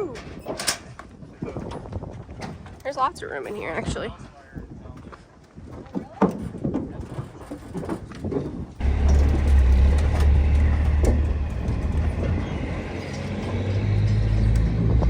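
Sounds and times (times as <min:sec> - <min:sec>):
heavy vehicle engine rumbling: 0:08.8 - 0:15.0.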